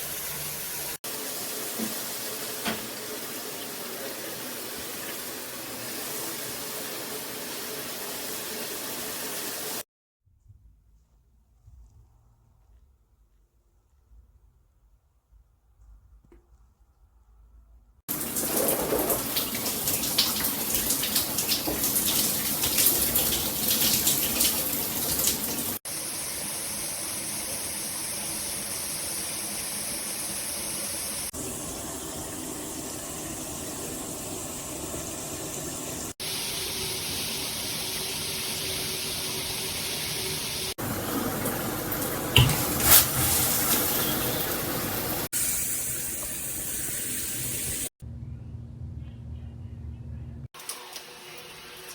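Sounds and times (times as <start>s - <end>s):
shower head spraying water: 18.1s - 47.9s.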